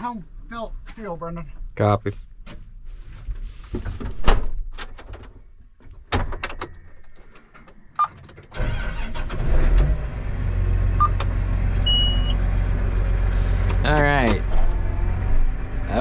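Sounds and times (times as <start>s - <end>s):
tractor diesel engine running: 8.6s - 16.0s
short beep: 11.9s - 12.4s.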